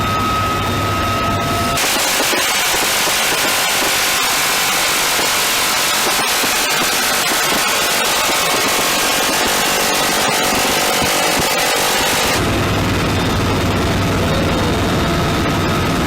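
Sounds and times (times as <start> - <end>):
minigun rapid fire: 1.7 - 13.4.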